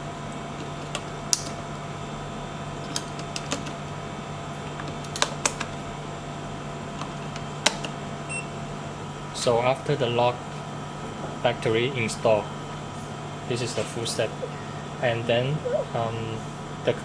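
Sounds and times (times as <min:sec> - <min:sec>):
steady low hum: 0:00.0 - 0:17.0
plastic clicks and snaps: 0:00.6 - 0:01.6, 0:04.8 - 0:05.8, 0:07.0 - 0:08.0.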